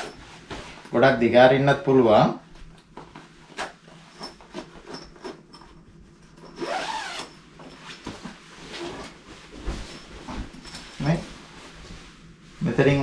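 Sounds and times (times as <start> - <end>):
fabric rustling: 0.0 - 1.1, 6.6 - 13.0
zipper being pulled open: 6.5 - 7.4.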